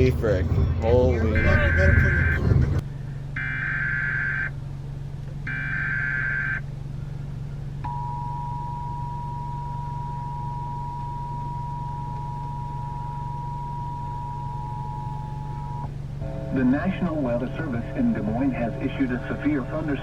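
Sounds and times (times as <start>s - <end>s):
buzzy digital data tones: 0.0s - 2.8s
constant low hum: 0.0s - 20.0s
two-tone attention signal: 1.3s - 2.6s, 7.9s - 16.9s.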